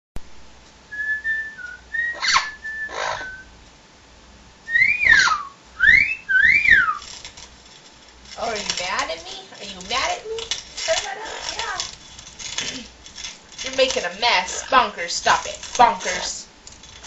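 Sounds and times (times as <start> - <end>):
parrot whistling: 0.9 - 3.5, 4.7 - 7.1
parrot squawks: 2.1 - 3.4, 4.8 - 7.0.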